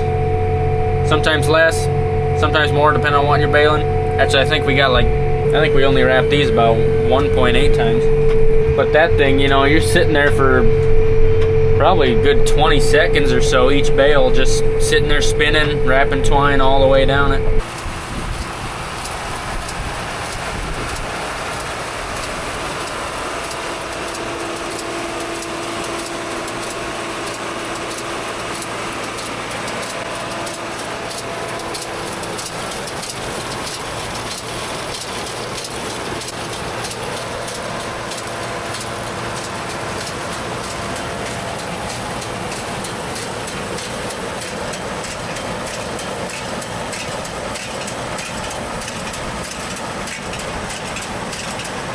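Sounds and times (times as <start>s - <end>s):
faint steady hum: 0.0s - 20.8s
tractor and baler running: 0.0s - 51.9s.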